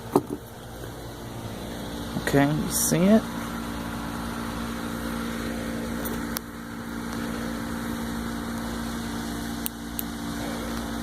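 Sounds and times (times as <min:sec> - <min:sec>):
appliance motor hum: 0:00.0 - 0:11.0.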